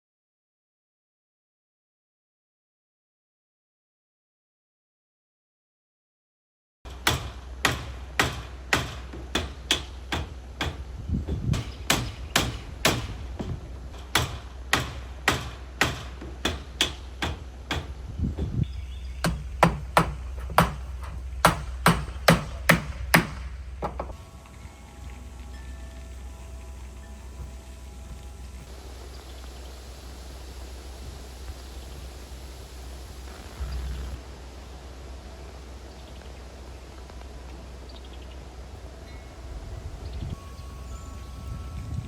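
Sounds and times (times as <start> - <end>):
hammer driving nails: 6.9 - 10.9, 11.6 - 18.0, 19.2 - 24.2
steady low hum: 6.9 - 42.0.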